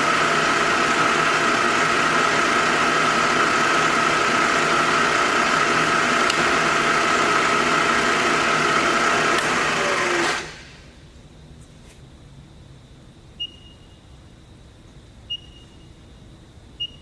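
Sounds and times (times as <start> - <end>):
milling machine whine: 0.0 - 10.9.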